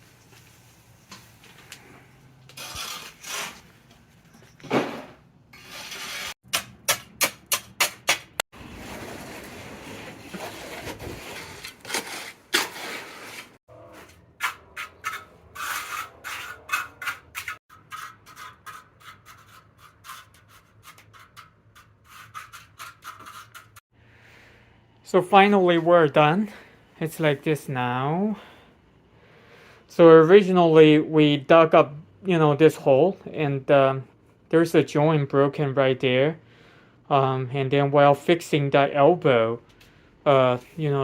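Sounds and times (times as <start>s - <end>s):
scraping strokes on hard surface: 2.5s - 3.7s, 5.5s - 6.4s, 8.6s - 23.8s.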